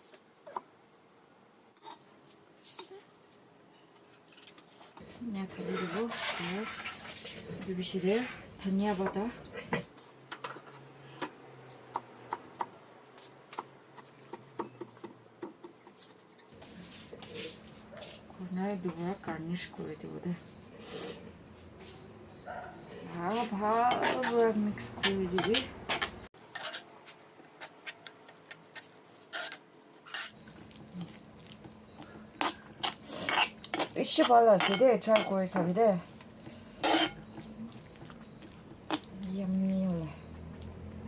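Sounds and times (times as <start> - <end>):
spoon scraping against bowl: 5.6 - 8.4, 23.3 - 31.2, 32.4 - 35.7, 36.8 - 37.5.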